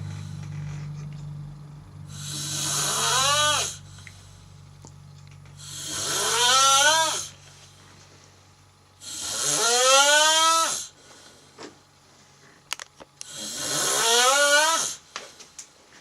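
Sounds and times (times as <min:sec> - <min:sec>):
cat snoring: 0:02.1 - 0:03.9, 0:05.6 - 0:07.3, 0:09.0 - 0:10.9, 0:13.3 - 0:15.0.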